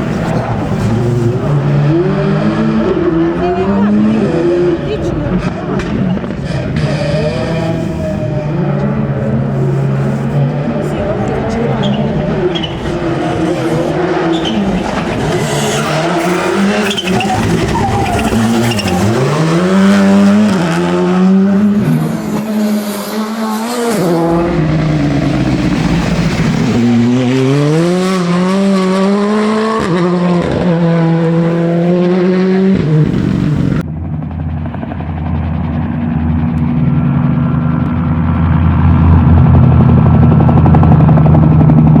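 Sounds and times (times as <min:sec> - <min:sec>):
low engine drone: 0:00.0 - 0:29.5, 0:30.1 - 0:42.0
rally car engine revving: 0:00.0 - 0:33.8
tyre squeal: 0:11.6 - 0:20.3.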